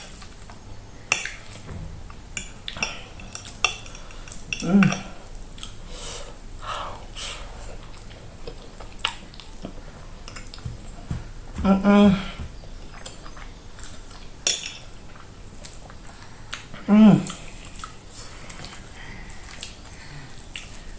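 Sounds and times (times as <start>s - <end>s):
cutlery clinking on a plate: 2.4s - 5.2s, 14.4s - 14.9s.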